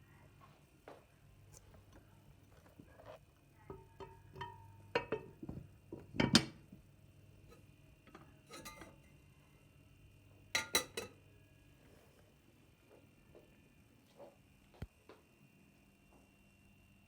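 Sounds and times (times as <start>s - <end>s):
dishes and cutlery clinking: 3.7s - 5.6s, 8.1s - 9.1s, 10.6s - 11.2s.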